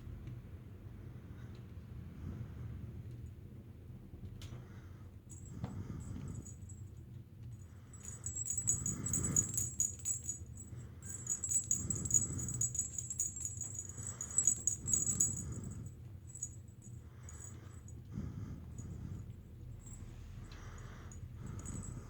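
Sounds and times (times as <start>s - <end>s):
small jingle bell jingling: 5.3s - 18.0s, 18.6s - 22.0s.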